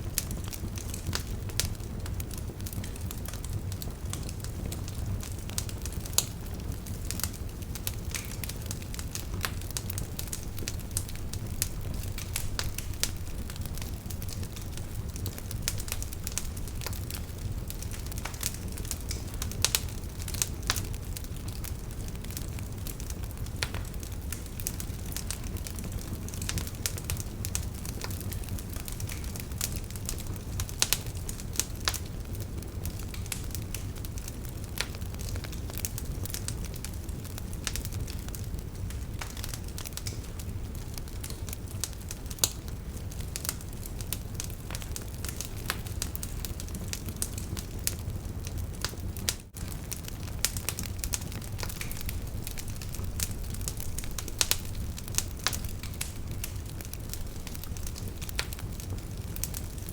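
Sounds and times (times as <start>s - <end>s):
campfire crackling and popping: 0.0s - 59.9s.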